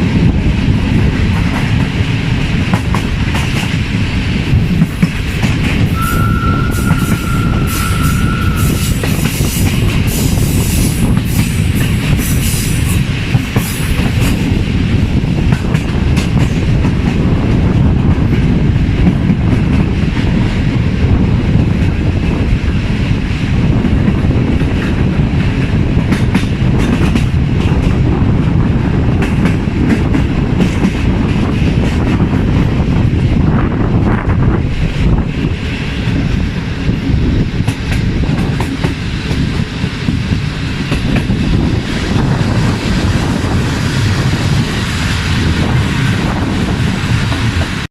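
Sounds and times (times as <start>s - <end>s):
train rolling rumble: 0.0s - 47.9s
wheels clickety-clack: 0.0s - 47.9s
high steady whistle tone: 6.0s - 9.1s.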